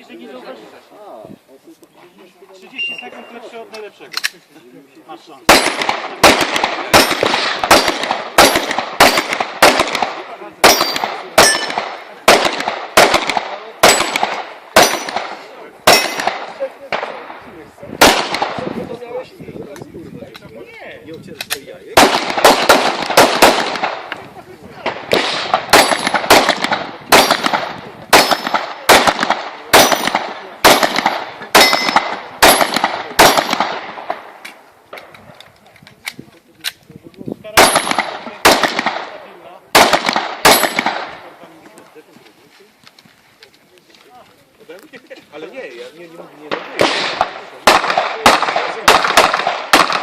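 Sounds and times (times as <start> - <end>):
handgun shots with echo: 5.5 - 17.2, 24.8 - 34.2, 39.8 - 41.1, 46.5 - 50.0.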